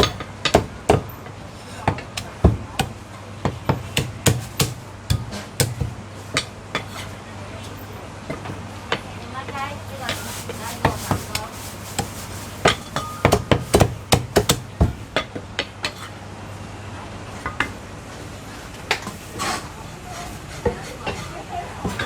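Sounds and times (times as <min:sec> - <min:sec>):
cleaver chopping meat on block: 0:00.0 - 0:01.2, 0:01.9 - 0:06.5, 0:10.8 - 0:15.3.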